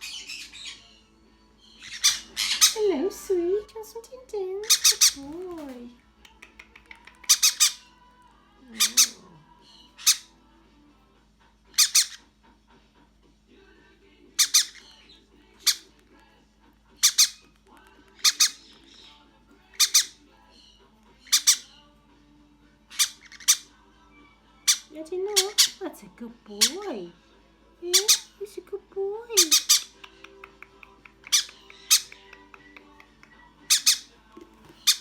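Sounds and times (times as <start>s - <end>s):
parrot chick squawking: 0.0s - 2.9s, 4.6s - 8.1s, 8.7s - 10.4s, 11.7s - 12.3s, 14.4s - 16.0s, 17.0s - 21.9s, 22.8s - 23.8s, 24.6s - 25.9s, 26.5s - 27.1s, 27.9s - 28.4s, 29.3s - 35.0s.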